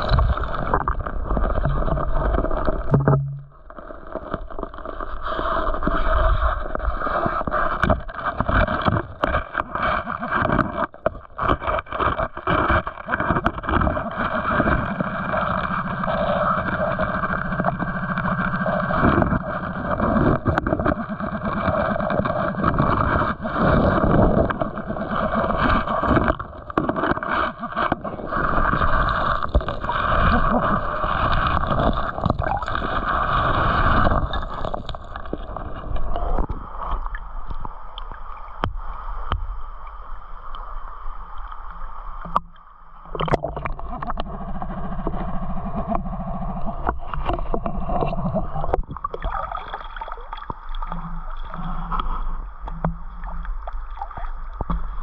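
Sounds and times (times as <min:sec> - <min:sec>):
creek water sloshing and gurgling: 0:00.0 - 0:03.5, 0:46.9 - 0:54.5
knocks and scrapes on rocks: 0:00.0 - 0:15.7, 0:17.6 - 0:36.6, 0:43.2 - 0:49.0.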